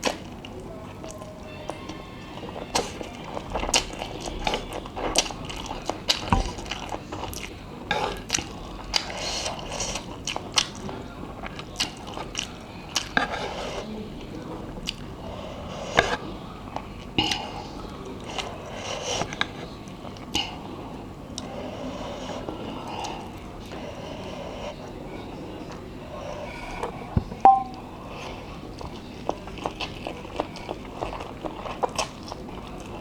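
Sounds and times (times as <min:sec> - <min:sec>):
chewing and slurping noodles: 0:00.0 - 0:33.0.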